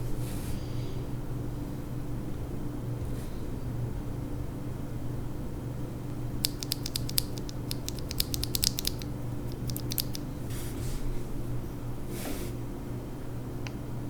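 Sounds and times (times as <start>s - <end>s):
keyboard switch plastic clicks: 6.4s - 10.2s.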